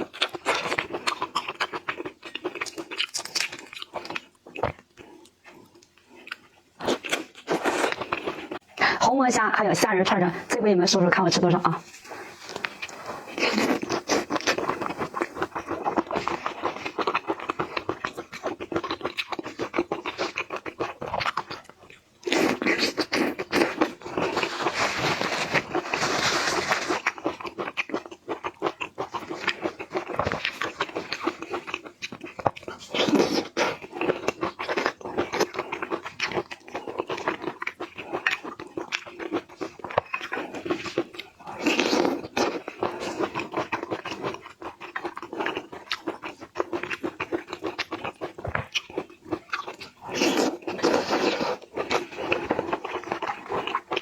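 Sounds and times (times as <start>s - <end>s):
chewing and crunching shrimp: 0.0s - 9.0s, 11.7s - 54.0s.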